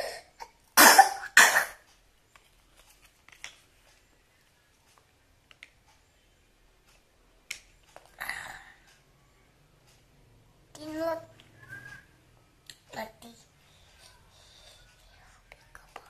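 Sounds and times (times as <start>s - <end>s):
child coughing: 0.0s - 1.9s.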